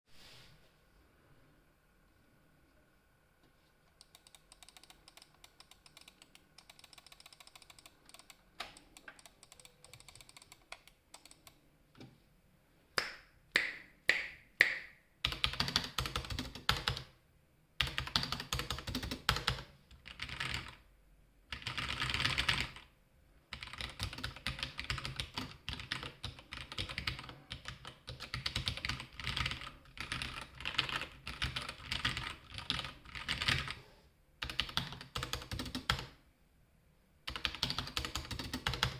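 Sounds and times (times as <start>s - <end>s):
mechanical keyboard typing: 4.0s - 11.6s, 15.2s - 17.1s, 17.8s - 20.8s, 21.5s - 22.9s, 23.5s - 33.8s, 34.4s - 36.2s, 37.3s - 38.9s.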